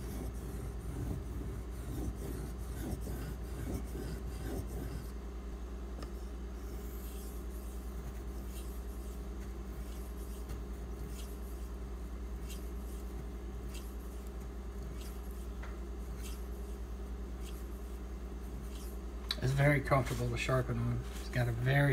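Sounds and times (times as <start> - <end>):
knife scraping on whetstone: 0.0 - 5.1
steady low hum: 0.0 - 21.9.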